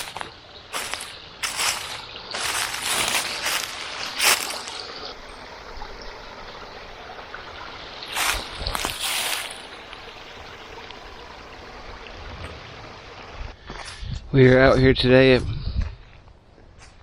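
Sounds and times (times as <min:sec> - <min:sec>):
rustling noises: 0:00.0 - 0:05.0, 0:08.1 - 0:09.7
stream water running: 0:00.0 - 0:14.0.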